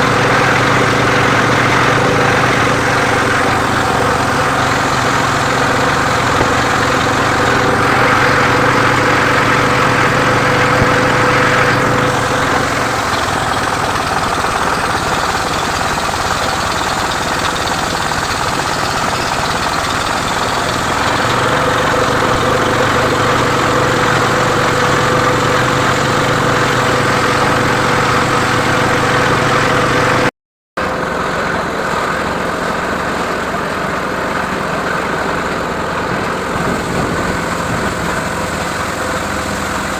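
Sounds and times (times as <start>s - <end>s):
sawing machine engine running: 0.0s - 39.9s.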